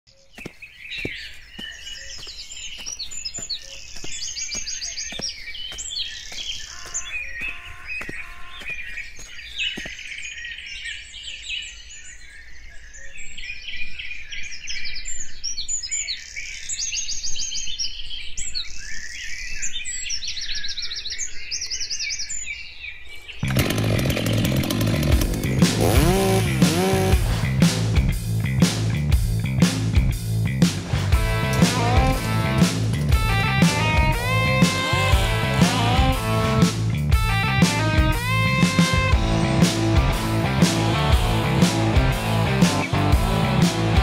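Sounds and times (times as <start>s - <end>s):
birds chirping and trilling: 0.1s - 27.2s.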